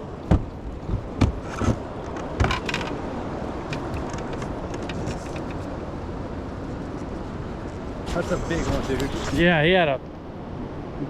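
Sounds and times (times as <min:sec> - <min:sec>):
low rumble of boat: 0:00.0 - 0:11.0
gear knocking and scraping: 0:08.1 - 0:09.6.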